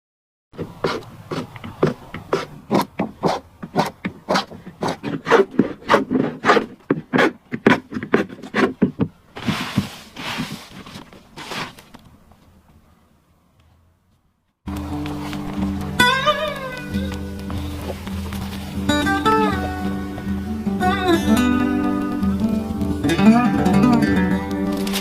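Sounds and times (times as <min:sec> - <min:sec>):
tool scraping wood: 0:00.6 - 0:11.9.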